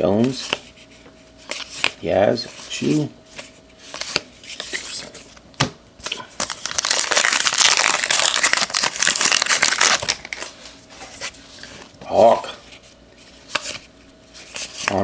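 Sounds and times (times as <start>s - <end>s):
card pack wrapper crinkling: 6.4s - 10.6s.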